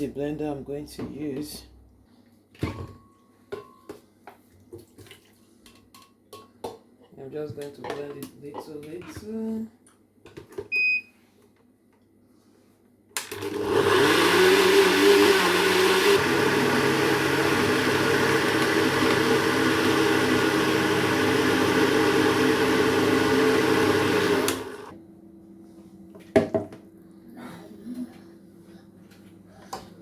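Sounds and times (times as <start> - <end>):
electric blender running: 13.2 - 25.0.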